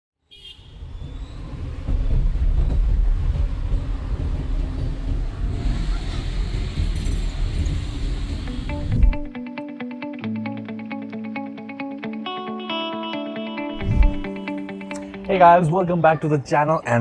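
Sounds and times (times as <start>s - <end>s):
wind and road noise: 0.4s - 9.3s, 13.8s - 14.3s
moving vehicle rumble: 0.6s - 9.3s, 13.8s - 14.3s.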